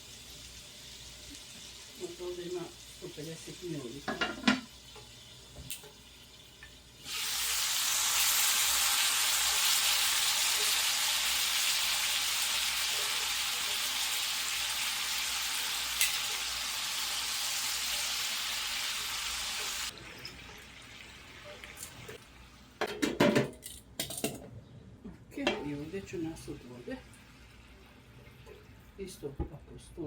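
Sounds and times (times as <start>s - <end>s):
water sizzling in hot pan: 0.0s - 22.8s.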